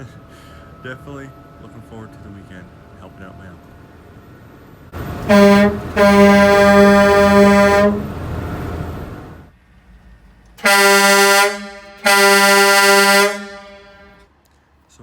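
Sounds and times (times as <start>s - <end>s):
air horn blasts: 5.0s - 8.2s, 10.6s - 14.2s.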